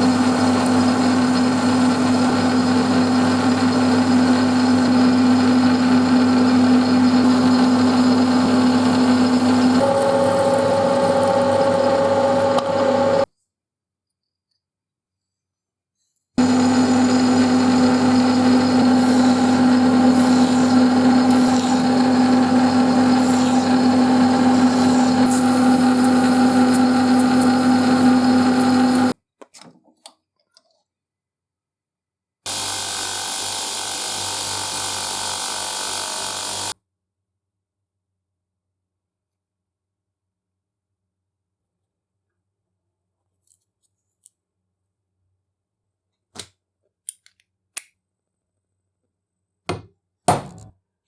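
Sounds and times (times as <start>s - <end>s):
power tool humming: 0.0s - 13.3s, 16.4s - 29.2s, 32.5s - 36.8s
quieter machine running: 0.0s - 13.3s, 16.4s - 29.2s.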